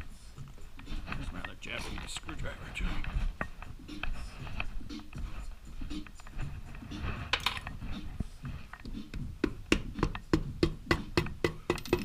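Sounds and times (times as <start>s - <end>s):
metal tools tapping on engine: 11.2s - 12.0s.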